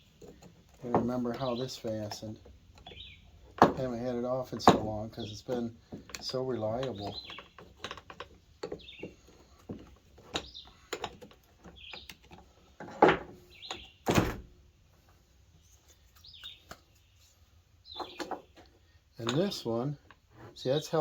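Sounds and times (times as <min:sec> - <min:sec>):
plastic parts clicking and knocking: 0:00.0 - 0:13.9
bird chirps: 0:02.8 - 0:03.3, 0:06.9 - 0:07.6, 0:08.7 - 0:09.2, 0:13.5 - 0:14.0, 0:16.2 - 0:18.5
thumps: 0:03.5 - 0:11.8.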